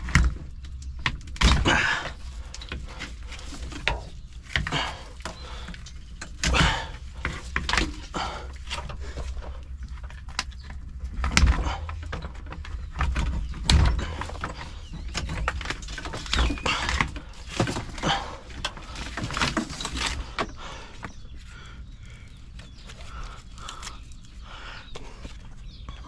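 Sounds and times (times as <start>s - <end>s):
heavy thumps: 2.8s - 18.3s.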